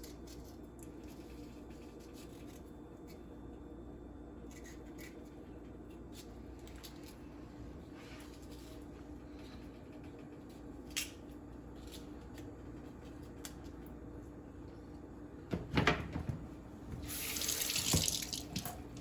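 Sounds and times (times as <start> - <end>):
sink tap running: 16.9 - 19.0.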